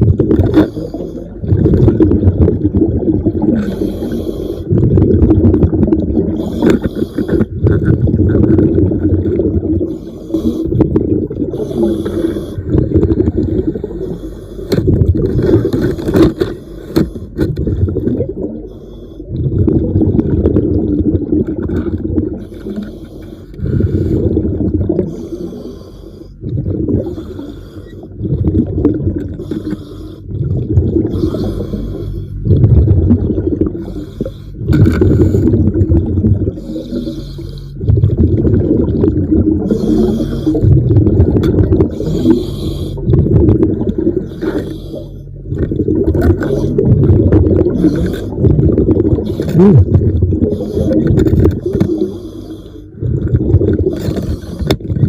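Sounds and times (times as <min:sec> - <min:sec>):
exhaled bubbles rumbling underwater: 0:00.0 - 0:55.0.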